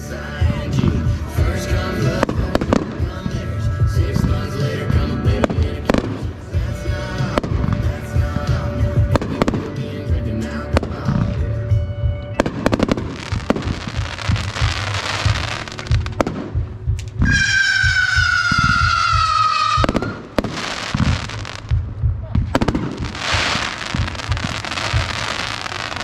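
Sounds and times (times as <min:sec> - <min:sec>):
background music: 0:00.0 - 0:26.0
fireworks bangs and thumps: 0:00.0 - 0:26.0
fireworks crackling: 0:00.0 - 0:26.0
firework whistling: 0:10.8 - 0:21.7, 0:22.5 - 0:26.0.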